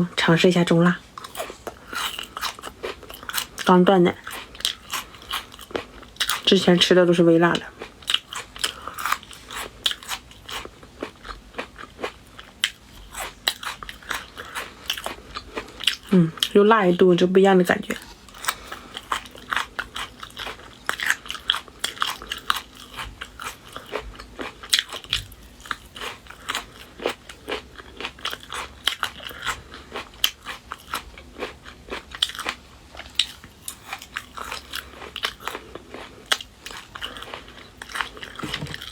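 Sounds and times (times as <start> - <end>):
biting and chewing: 1.2 - 6.5, 7.5 - 16.2, 17.9 - 38.9.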